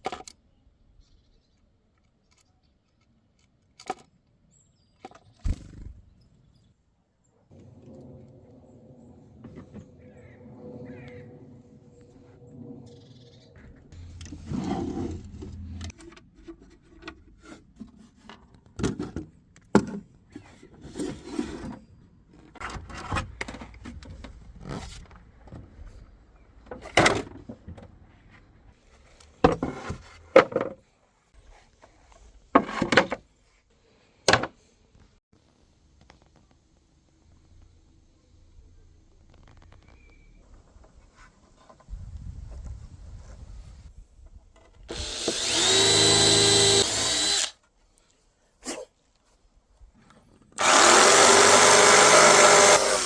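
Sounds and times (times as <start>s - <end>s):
wood scraping: 26.7s - 33.6s, 44.5s - 47.5s.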